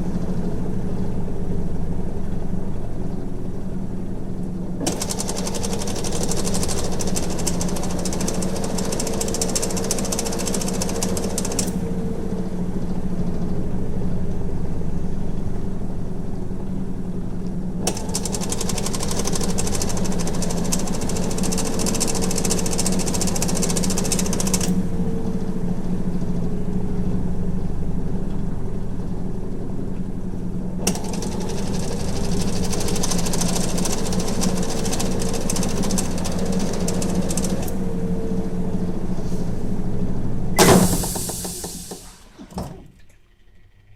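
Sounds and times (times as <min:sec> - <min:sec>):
washing machine motor hum: 0:00.0 - 0:43.9
harsh rattle: 0:04.8 - 0:11.8, 0:17.8 - 0:24.8, 0:30.8 - 0:42.2.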